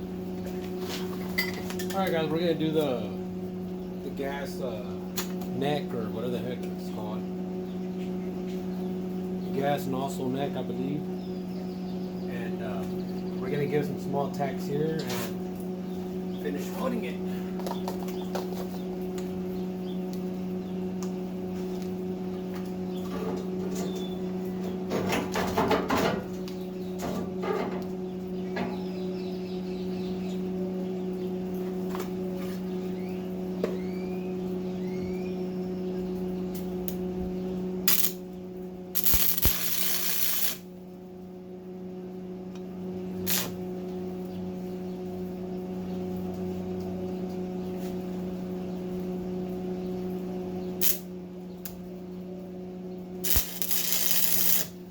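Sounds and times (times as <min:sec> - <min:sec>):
birds chirping: 0:00.0 - 0:25.2, 0:26.2 - 0:54.9
steady hum: 0:00.0 - 0:54.9
welding arc crackle: 0:37.8 - 0:40.8, 0:43.1 - 0:43.8, 0:50.8 - 0:51.8, 0:53.2 - 0:54.9.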